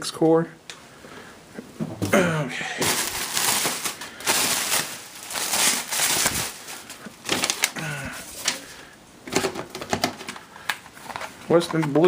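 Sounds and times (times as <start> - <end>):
packaging rustling and crackling: 2.7 - 12.0.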